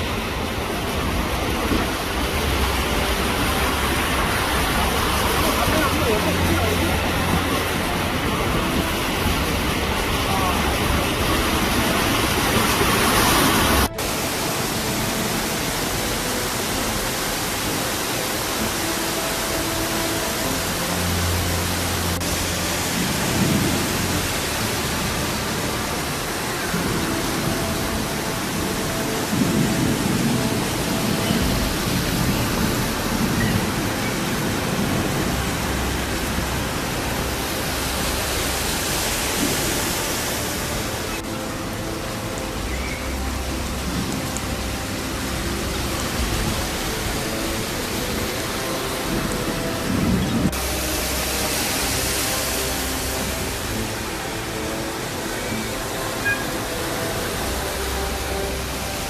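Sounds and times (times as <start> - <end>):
heavy rain hissing: 0.0 - 59.0
low rumbling: 0.0 - 59.0.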